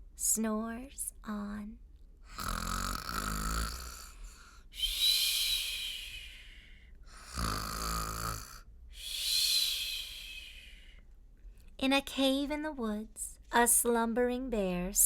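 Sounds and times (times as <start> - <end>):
woman imitating snoring: 2.3 - 5.9, 7.1 - 8.6.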